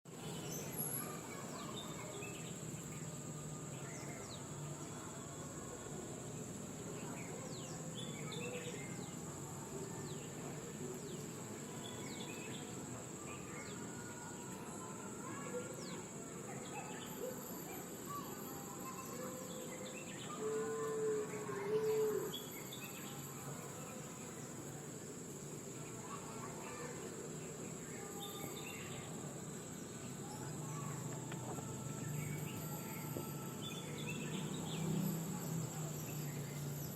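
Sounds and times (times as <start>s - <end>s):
high-pitched insect drone: 26.1s - 36.9s.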